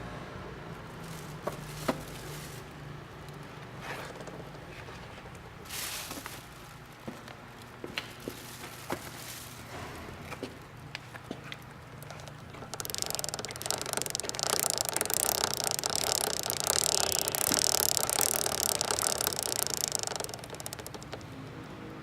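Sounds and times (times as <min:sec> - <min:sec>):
drive chain rattling: 0:12.0 - 0:21.3.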